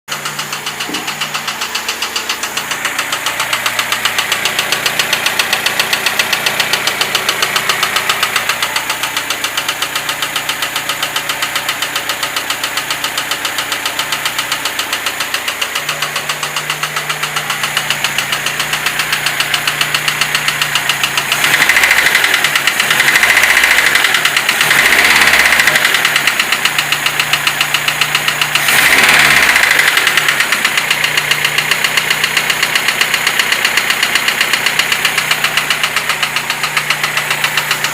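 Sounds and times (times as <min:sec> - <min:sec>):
car engine knocking: 0:00.1 - 0:37.9
engine revving: 0:00.1 - 0:37.9.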